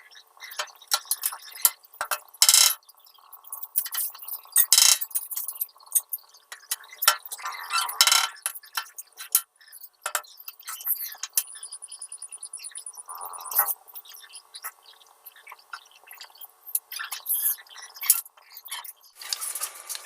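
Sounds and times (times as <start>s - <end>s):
hard objects clinking and tapping: 0.6s - 2.8s, 3.8s - 9.4s, 10.0s - 11.4s
high rapid ticking tone: 12.3s - 13.9s.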